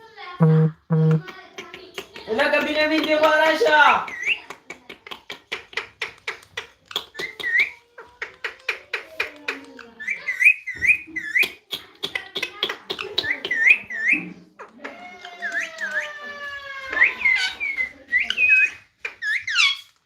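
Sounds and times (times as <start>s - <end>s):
parrot clicking: 4.1s - 9.8s.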